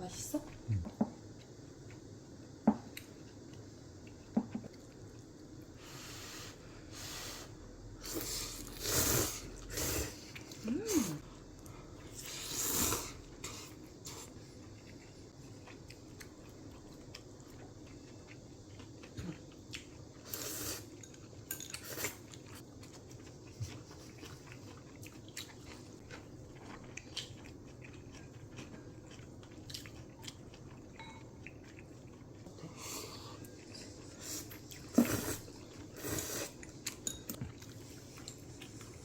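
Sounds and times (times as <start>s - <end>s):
chewing: 13.4s - 20.4s, 21.0s - 32.5s.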